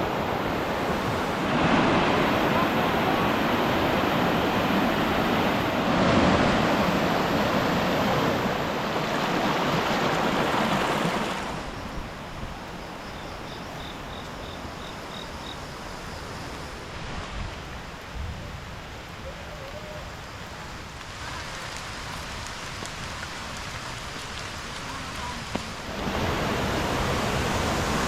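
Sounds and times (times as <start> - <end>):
waterfall roaring: 0.0 - 11.5, 19.4 - 28.0.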